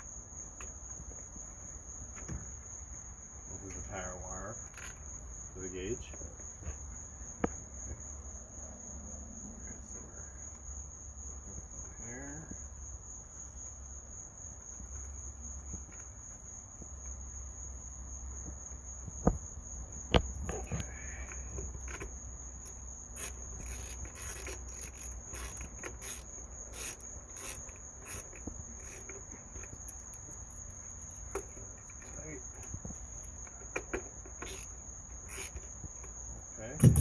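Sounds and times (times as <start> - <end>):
faint ticks and rustles: 0.0 - 8.2, 9.6 - 37.0
insect trilling: 1.4 - 8.0, 11.7 - 13.2, 17.1 - 37.0.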